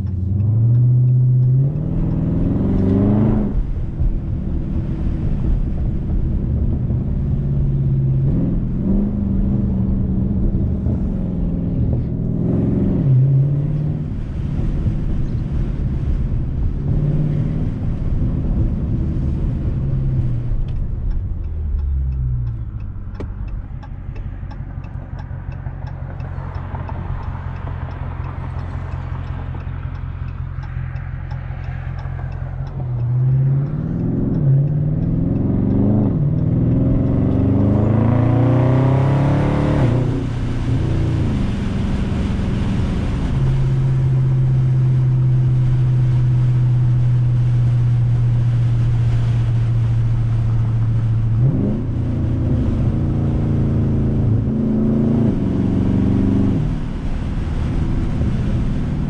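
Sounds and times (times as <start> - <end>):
car exhaust accelerating: 0.0 - 59.0.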